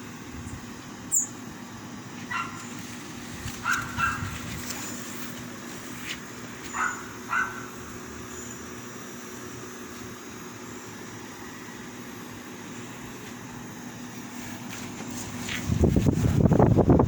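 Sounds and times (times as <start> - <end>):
air conditioner humming: 0.0 - 17.0
dog yipping: 2.3 - 2.7, 3.6 - 4.4, 6.7 - 7.7.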